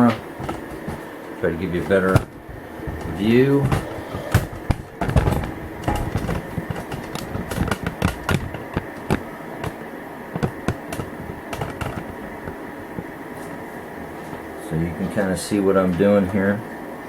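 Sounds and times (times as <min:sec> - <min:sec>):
handling clicks and taps: 0:00.0 - 0:13.6.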